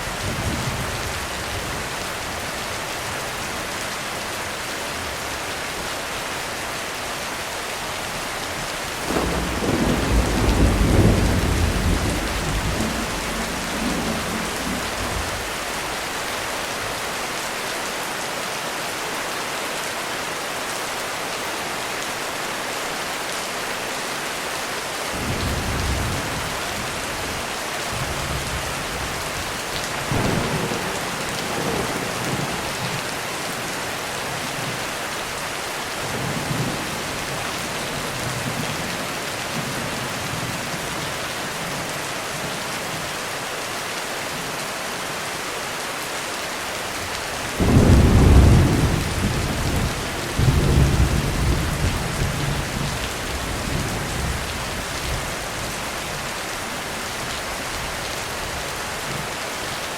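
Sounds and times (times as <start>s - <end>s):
heavy rain falling: 0.0s - 59.9s
thunder rumbling: 9.0s - 15.6s, 30.0s - 33.1s, 47.6s - 54.8s.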